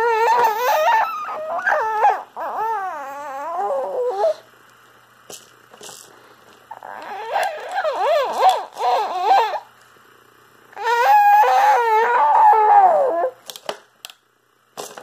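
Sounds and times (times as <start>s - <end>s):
baby squealing: 0.0s - 4.4s, 6.7s - 9.7s, 10.8s - 13.4s.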